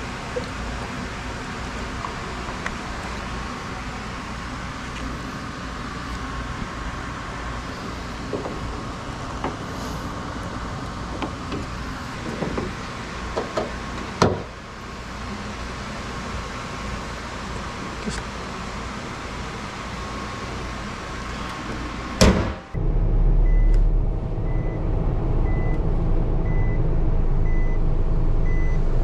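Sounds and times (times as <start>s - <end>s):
vehicle rumble: 0.0s - 29.0s
sharp loud thump: 22.2s - 28.0s.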